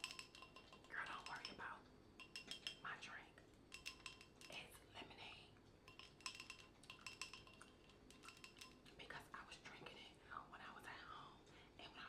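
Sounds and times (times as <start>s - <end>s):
faint whisper: 2.8s - 3.4s, 9.0s - 12.0s.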